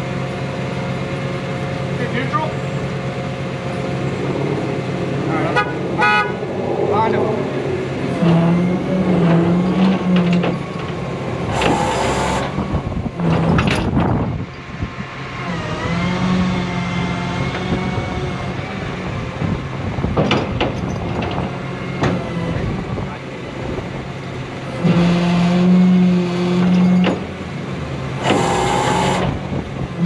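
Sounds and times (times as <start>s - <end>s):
tow truck winch humming: 7.8s - 30.0s.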